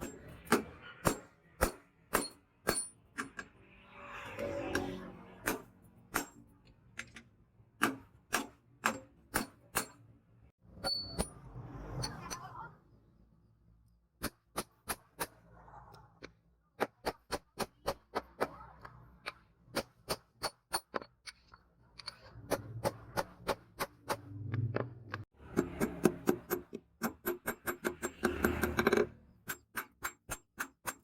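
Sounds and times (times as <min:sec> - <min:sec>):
hammer striking steel on anvil: 0:00.0 - 0:03.4.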